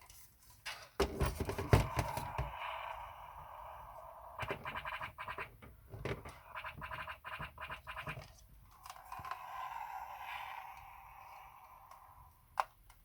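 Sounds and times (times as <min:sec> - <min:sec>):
toy electronic sound effects: 0:06.4 - 0:08.3.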